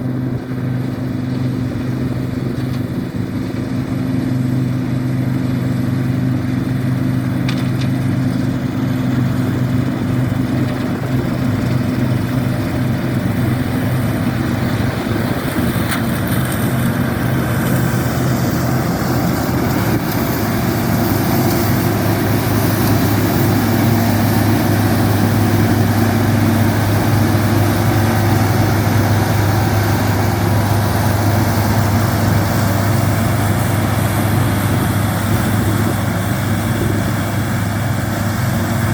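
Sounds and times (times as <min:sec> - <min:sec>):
cutting and threshing machinery: 0:00.0 - 0:38.9
diesel engine drone: 0:00.0 - 0:38.9.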